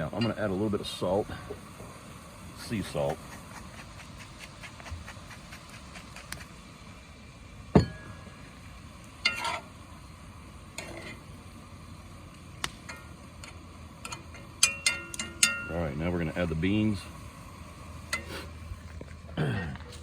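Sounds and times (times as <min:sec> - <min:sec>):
utensil clinking against pot: 0:14.0 - 0:15.7.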